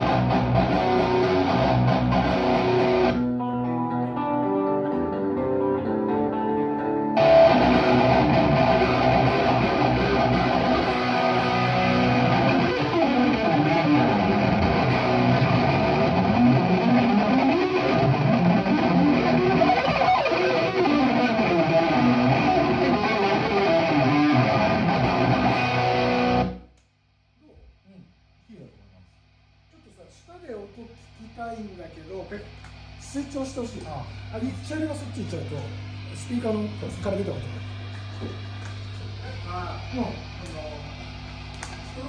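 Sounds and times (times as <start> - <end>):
distorted electric guitar: 0.0 - 26.7, 32.9 - 42.0.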